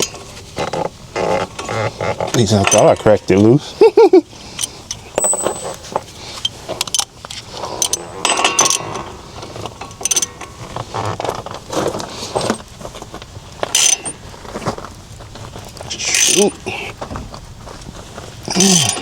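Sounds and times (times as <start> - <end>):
metal tools clinking: 4.6 - 10.8, 13.7 - 14.2, 18.5 - 19.0.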